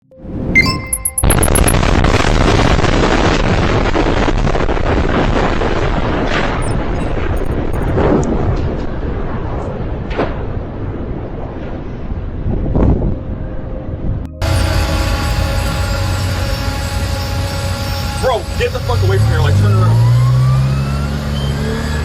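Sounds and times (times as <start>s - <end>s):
musical sting with high pips: 0.4s - 1.8s, 14.3s - 22.0s
explosion and fire roaring: 1.5s - 13.1s
loud steady rushing noise: 6.6s - 8.0s, 14.4s - 22.0s.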